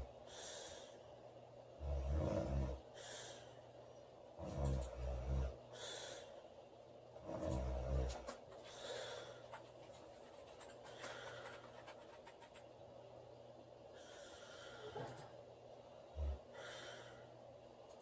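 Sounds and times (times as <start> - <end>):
woman breathing softly: 0.2 - 1.1, 2.9 - 3.8, 5.7 - 6.5, 8.6 - 9.5, 13.9 - 15.4, 16.3 - 17.4
deep snore: 1.8 - 2.9, 4.4 - 5.6, 7.2 - 8.3, 16.1 - 16.7.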